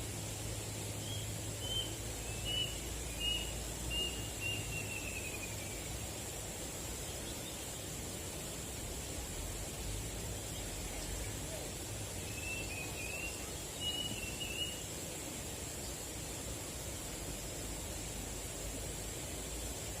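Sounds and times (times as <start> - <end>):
outdoor background noise: 0.0 - 20.0
bird chirping: 1.0 - 5.9, 12.2 - 14.9.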